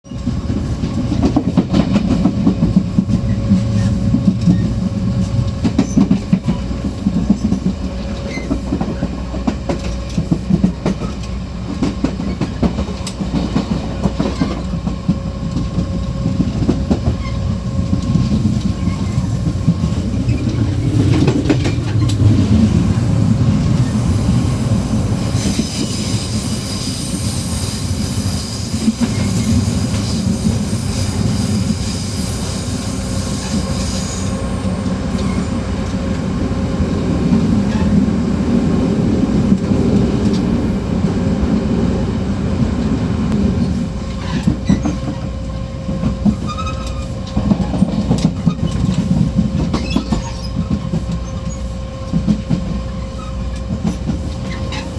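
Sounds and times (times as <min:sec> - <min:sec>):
train cars rumbling and rattling: 0:00.0 - 0:54.9
high-pitched squeal: 0:18.8 - 0:35.7.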